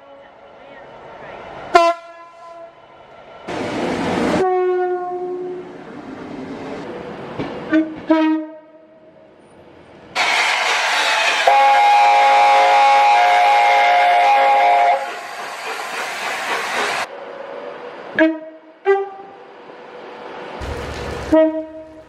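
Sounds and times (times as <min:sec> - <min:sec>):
long multi-tone train horn: 0:00.0 - 0:00.4, 0:01.7 - 0:02.8, 0:04.3 - 0:05.7, 0:07.7 - 0:09.1, 0:11.0 - 0:15.2, 0:18.1 - 0:19.5, 0:21.3 - 0:22.0
train passing: 0:00.0 - 0:22.0
train horn toots: 0:01.7 - 0:02.8, 0:04.4 - 0:05.6, 0:07.7 - 0:09.0, 0:11.0 - 0:15.2, 0:18.2 - 0:19.4, 0:21.2 - 0:22.0.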